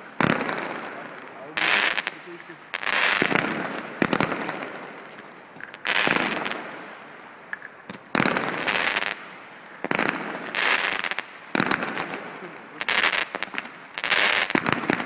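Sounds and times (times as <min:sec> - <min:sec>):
firework shell bursts crackling: 0:00.2 - 0:06.8.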